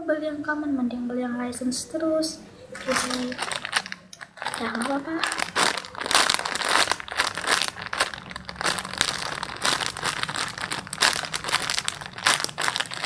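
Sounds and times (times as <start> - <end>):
plastic crinkling and rustling: 2.7 - 13.0.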